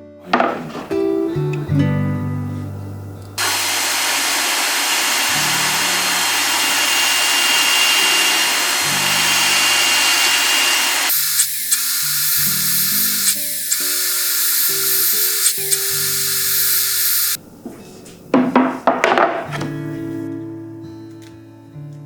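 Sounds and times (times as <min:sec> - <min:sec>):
background music: 0:00.0 - 0:03.4, 0:19.3 - 0:22.0
workshop tool hissing: 0:03.4 - 0:17.4.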